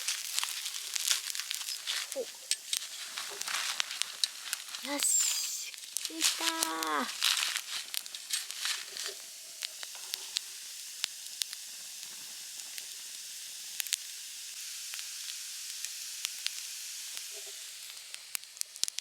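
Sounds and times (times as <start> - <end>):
campfire hissing: 0.0 - 19.0
fire crackles and pops: 0.0 - 19.0.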